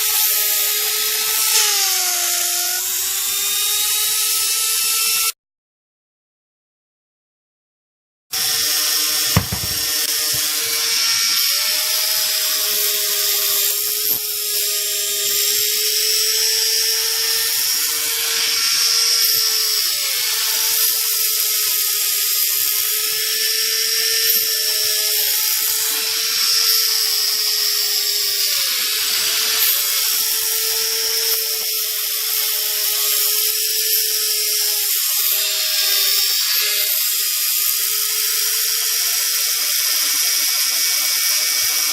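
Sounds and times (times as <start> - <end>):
electric motor whine: 8.4 - 22.0.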